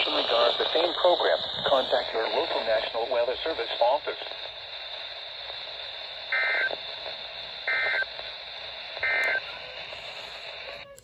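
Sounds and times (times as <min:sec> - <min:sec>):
radio hiss: 0:00.0 - 0:11.0
two-tone data bursts: 0:06.3 - 0:07.0, 0:07.6 - 0:08.3, 0:09.0 - 0:09.5.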